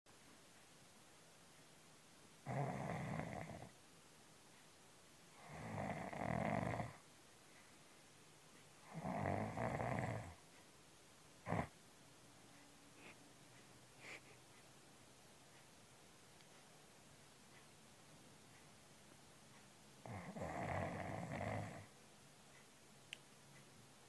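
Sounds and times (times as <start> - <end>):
cat snoring loudly: 2.4 - 3.7, 5.4 - 7.0, 8.8 - 10.4, 11.4 - 11.7, 20.0 - 21.9.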